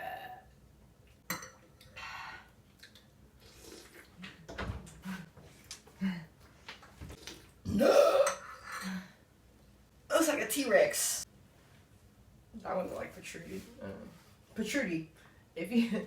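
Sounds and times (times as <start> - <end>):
woman burping: 7.6 - 9.1.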